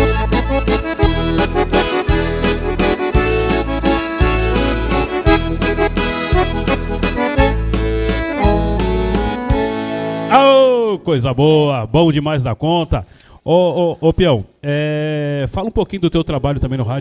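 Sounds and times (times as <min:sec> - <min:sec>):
piano accordion melody: 0:00.0 - 0:11.2
low bass notes: 0:00.0 - 0:11.4.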